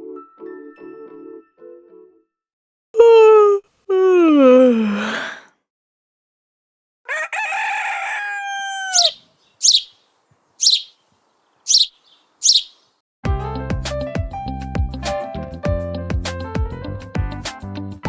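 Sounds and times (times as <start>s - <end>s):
rooster crowing: 7.1s - 9.9s
small bird chirping: 8.8s - 12.9s.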